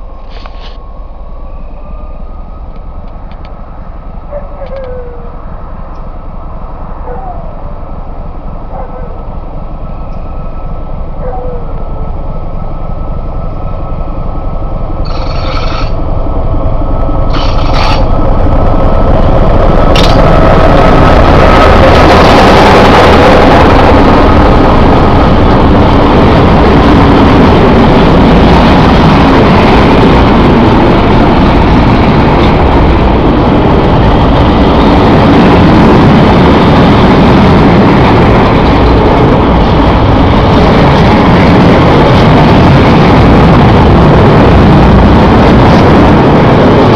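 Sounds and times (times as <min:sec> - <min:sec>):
freight train wheels rumbling on rail: 0:00.0 - 0:46.9.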